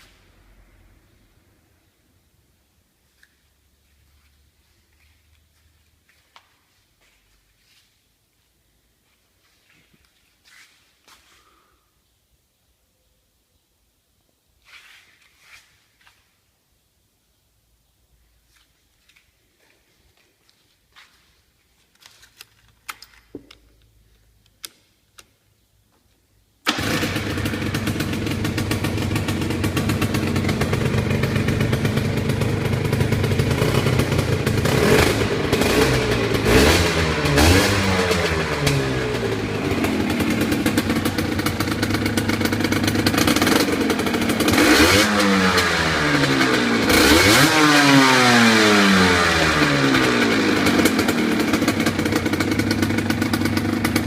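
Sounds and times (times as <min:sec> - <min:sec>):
two-stroke engine revving: 0:26.7 - 0:54.0.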